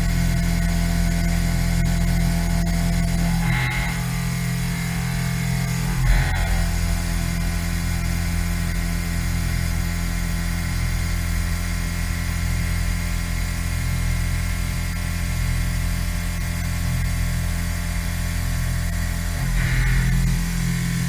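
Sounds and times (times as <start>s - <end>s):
milling machine running: 0.0s - 12.2s, 16.7s - 21.0s.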